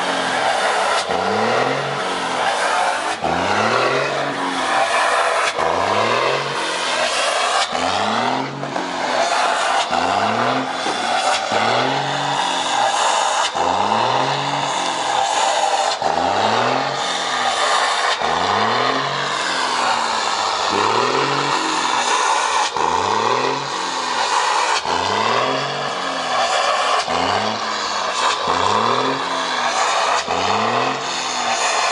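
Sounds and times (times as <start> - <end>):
diesel truck engine revving: 0.0 - 31.9.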